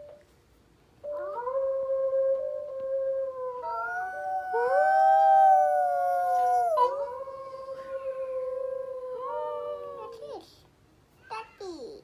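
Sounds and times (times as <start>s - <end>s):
long drawn-out howling: 3.3s - 10.0s.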